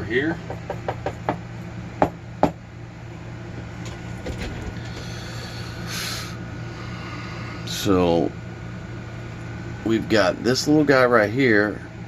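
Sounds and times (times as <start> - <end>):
low electrical hum: 0.0 - 12.0
sharp knocks on work surface: 0.4 - 1.4, 2.0 - 2.6.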